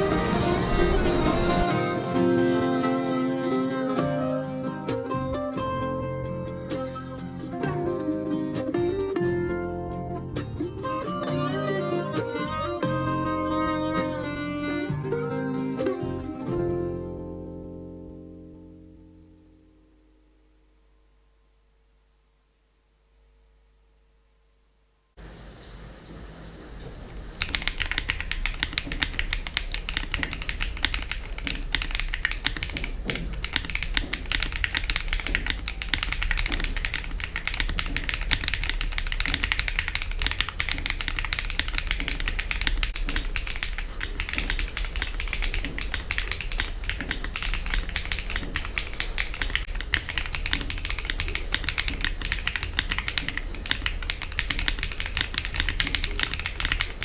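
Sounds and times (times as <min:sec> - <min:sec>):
fast keyboard typing: 0:27.3 - 0:57.0.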